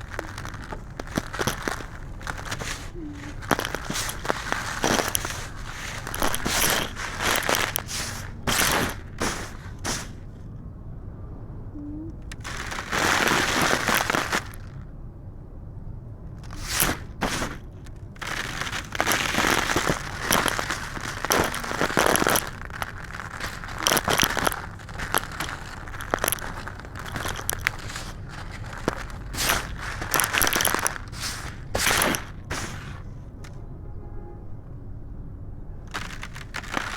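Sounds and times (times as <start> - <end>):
concrete crunching: 0.0 - 10.4, 12.2 - 14.8, 16.4 - 33.6, 35.9 - 36.9.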